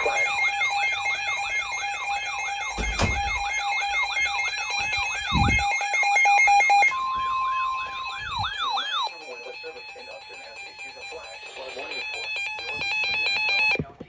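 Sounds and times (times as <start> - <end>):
steady alert tone: 0.0 - 9.1
siren-like wail: 0.0 - 10.6.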